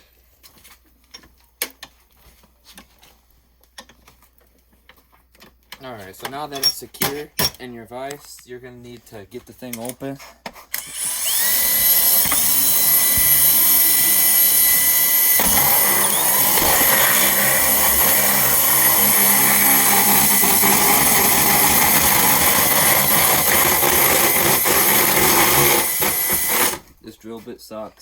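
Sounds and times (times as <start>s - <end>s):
electric drill boring into plastic: 10.8s - 26.9s.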